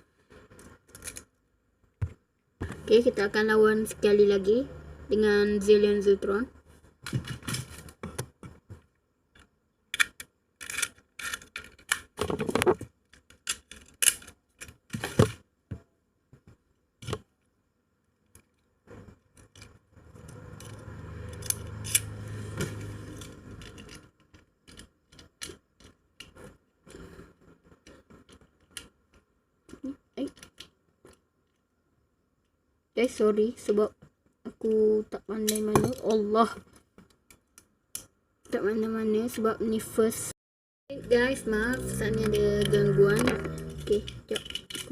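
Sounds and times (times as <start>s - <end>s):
plastic and metal parts clicking: 9.3s - 15.3s, 22.8s - 27.0s, 27.8s - 31.2s, 41.7s - 44.9s.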